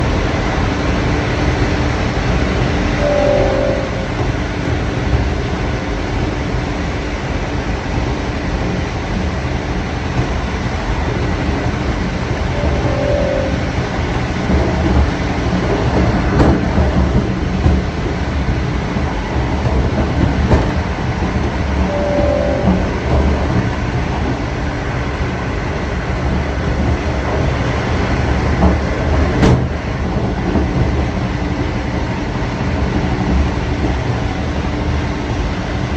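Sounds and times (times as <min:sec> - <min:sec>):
train rumbling: 0:00.0 - 0:35.9
short tone: 0:03.0 - 0:04.4, 0:12.3 - 0:14.6, 0:21.8 - 0:23.3
wheels clattering over rails: 0:08.6 - 0:35.9.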